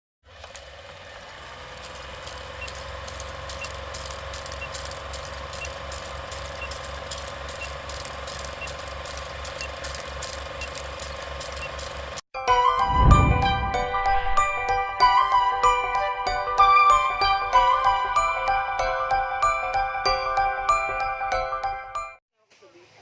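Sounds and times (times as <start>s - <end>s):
mechanical whir: 0.3s - 12.2s
rapid even clicking: 1.6s - 12.2s.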